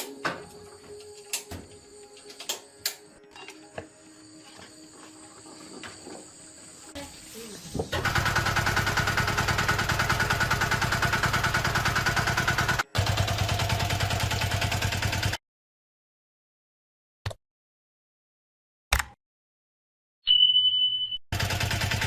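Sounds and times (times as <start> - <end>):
motorised tool running: 7.9 - 15.4.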